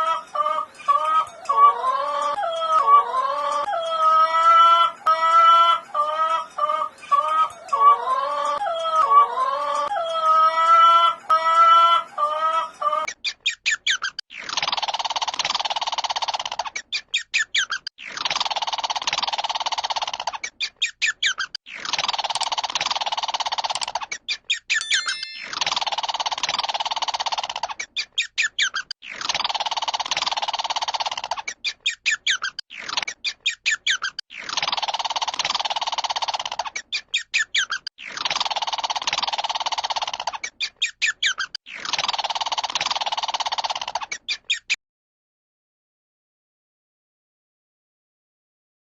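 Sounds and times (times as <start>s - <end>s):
bird chirping and trilling: 13.1s - 14.6s, 16.6s - 18.2s, 20.3s - 22.0s, 24.0s - 29.7s, 31.4s - 44.8s
animal call with buzzing rattle: 14.4s - 16.7s, 18.0s - 20.5s, 21.7s - 24.0s, 24.8s - 27.8s, 28.6s - 31.5s, 33.9s - 44.2s.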